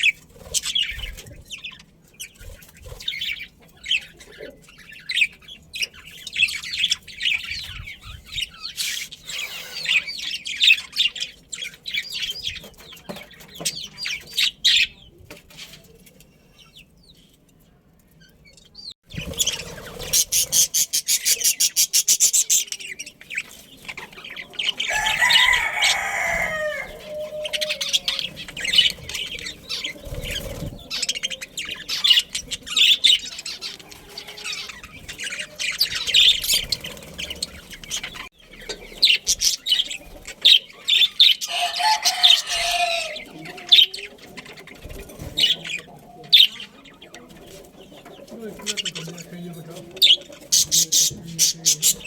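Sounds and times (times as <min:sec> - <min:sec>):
budgerigars chirping: 0:00.0 - 0:15.1, 0:19.1 - 0:52.0
wings flapping: 0:28.7 - 0:31.1, 0:36.0 - 0:38.2.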